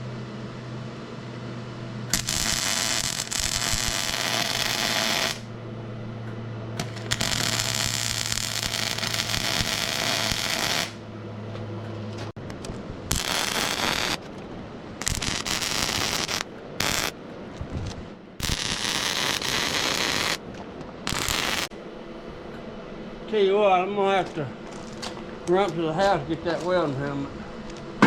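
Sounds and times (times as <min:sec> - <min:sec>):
steady low hum: 0:00.0 - 0:28.0
arc welding crackling: 0:02.1 - 0:05.5, 0:06.8 - 0:11.0, 0:12.5 - 0:14.4, 0:15.0 - 0:20.4, 0:21.0 - 0:21.7.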